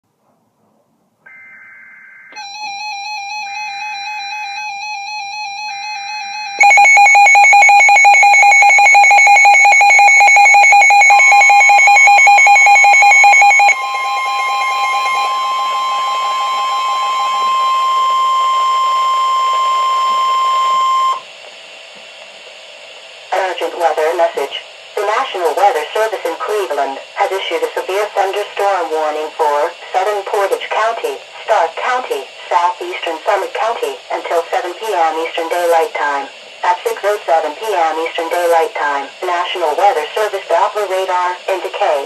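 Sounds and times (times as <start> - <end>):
steady single-pitch warning tone: 2.3 - 21.3
warbling alarm tone: 2.4 - 21.2
rapidly pulsing alarm: 2.4 - 21.3.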